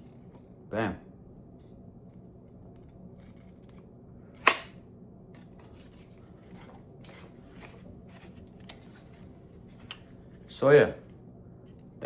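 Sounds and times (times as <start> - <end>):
knife snapping through cardboard: 4.4 - 4.8.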